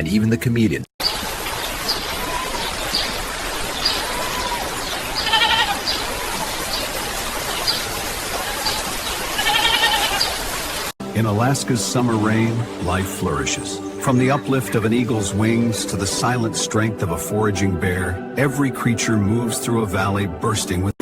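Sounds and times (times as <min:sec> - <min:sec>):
rain hiss: 0:01.0 - 0:13.8
wavering animal calls: 0:02.0 - 0:06.7, 0:08.4 - 0:10.4.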